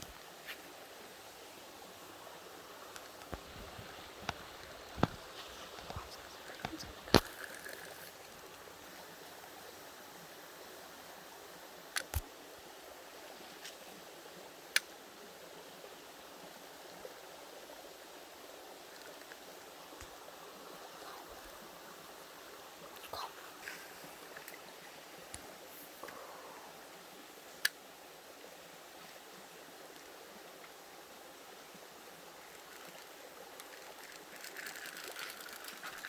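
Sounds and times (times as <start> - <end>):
creek water running: 0.0 - 36.0
sharp clicks: 12.0 - 12.3.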